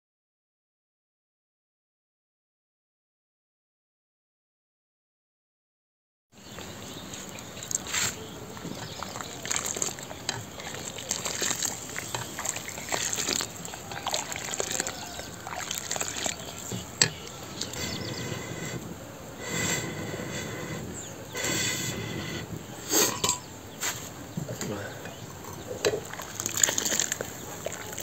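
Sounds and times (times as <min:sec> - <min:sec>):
water running and splashing: 0:07.6 - 0:18.6, 0:25.4 - 0:28.0.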